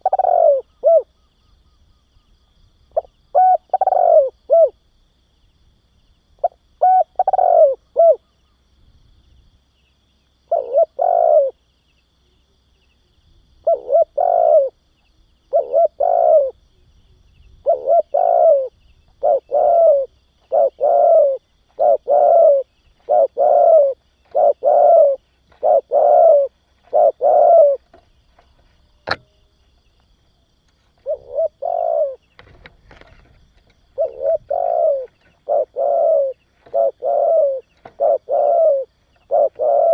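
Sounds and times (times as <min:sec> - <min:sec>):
dove cooing: 0:00.0 - 0:01.3, 0:02.9 - 0:04.8, 0:06.4 - 0:08.5, 0:10.4 - 0:11.6, 0:13.6 - 0:14.8, 0:15.4 - 0:16.9, 0:17.5 - 0:28.0, 0:30.9 - 0:39.9.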